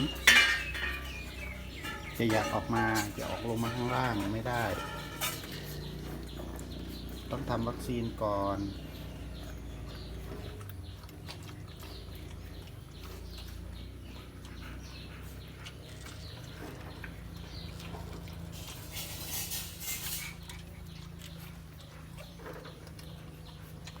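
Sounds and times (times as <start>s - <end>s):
steady low hum: 0.0s - 16.1s
puppies squeaking and whimpering: 0.0s - 24.0s
hissing rustle: 18.4s - 20.8s.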